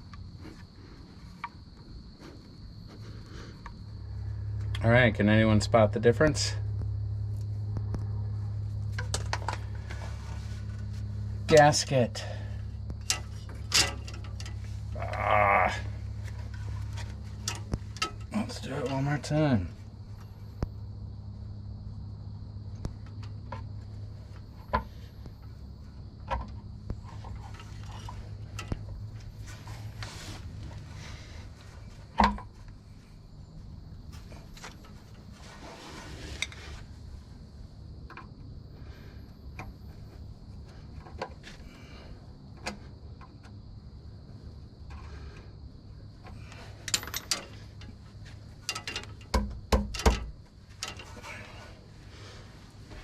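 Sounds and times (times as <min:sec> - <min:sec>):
steady hum: 0:00.0 - 0:53.0
metal tools clinking and tapping: 0:13.0 - 0:14.8, 0:16.3 - 0:19.3, 0:46.8 - 0:48.0, 0:48.6 - 0:51.6.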